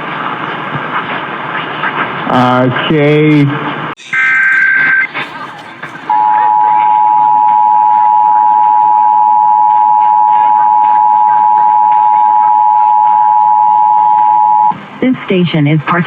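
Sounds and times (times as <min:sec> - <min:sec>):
two-tone alert signal: 0:04.0 - 0:14.7.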